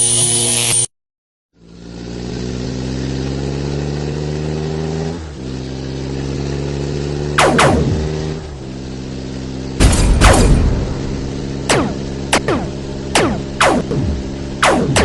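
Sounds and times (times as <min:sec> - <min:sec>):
engine-like mechanical hum: 0:01.6 - 0:15.0.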